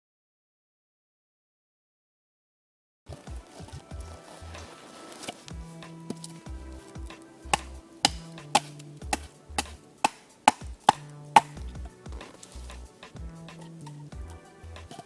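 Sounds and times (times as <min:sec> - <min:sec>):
background music with bass: 0:03.1 - 0:15.0.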